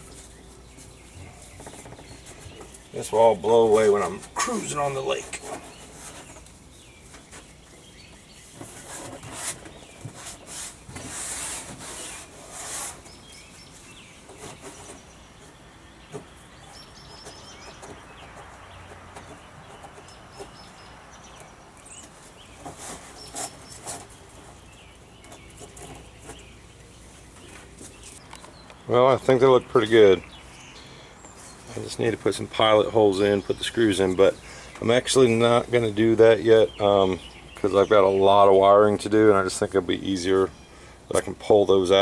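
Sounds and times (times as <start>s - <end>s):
rubbing and scraping: 0.0s - 20.8s, 21.4s - 28.2s.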